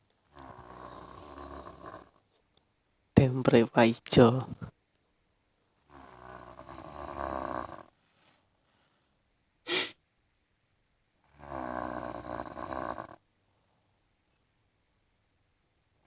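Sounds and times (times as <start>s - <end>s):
person snoring: 0.4s - 2.1s, 6.0s - 7.9s, 9.7s - 10.0s, 11.4s - 13.2s
brief sharp noise: 9.7s - 10.0s.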